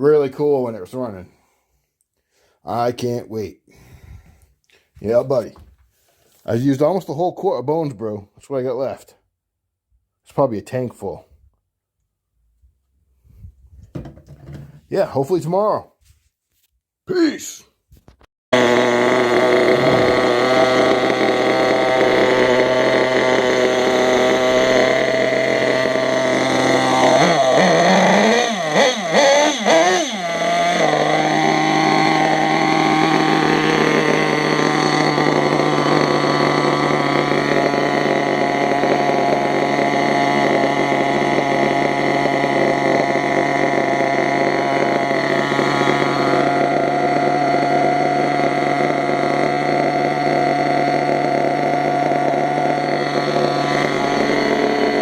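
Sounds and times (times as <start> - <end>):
small nitro engine running: 18.6 - 55.0.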